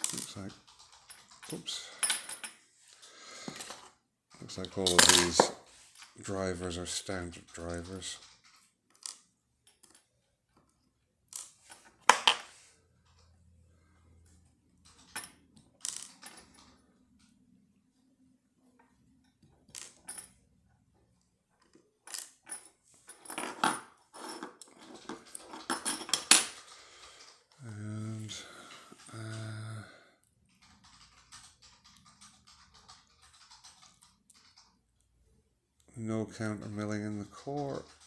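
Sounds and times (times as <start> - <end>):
small metal parts clicking: 4.7 - 6.1.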